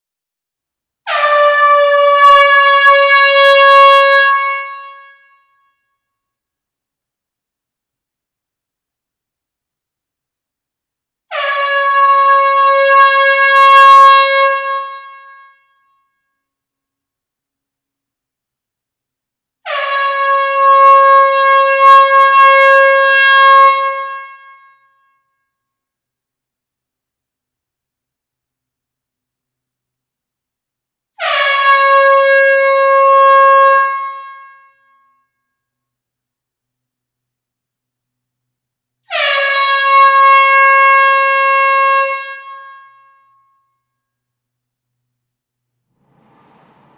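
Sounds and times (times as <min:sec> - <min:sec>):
air horn blast in a hall: 0:01.1 - 0:05.5, 0:11.3 - 0:15.6, 0:19.6 - 0:24.8, 0:31.2 - 0:34.7, 0:39.1 - 0:43.2, 0:45.9 - 0:46.9
air horn blast: 0:45.9 - 0:46.9.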